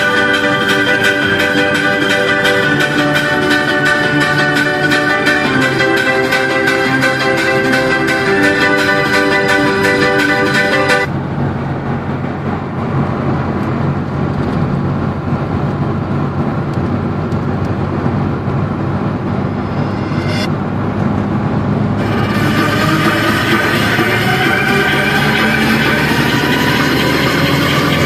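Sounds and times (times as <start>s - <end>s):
music: 0.0s - 11.1s, 19.4s - 20.5s, 22.0s - 28.0s
car engine and road rumble: 0.0s - 28.0s.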